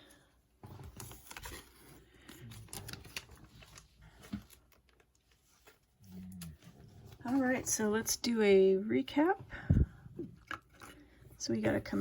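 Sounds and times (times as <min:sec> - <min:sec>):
cards and packaging rustling: 0:00.6 - 0:08.2.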